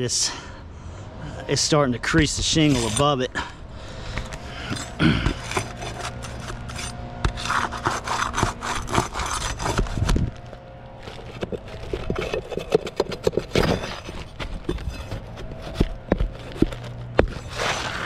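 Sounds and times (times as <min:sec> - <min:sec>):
roof shingles scraping: 0:04.0 - 0:18.0.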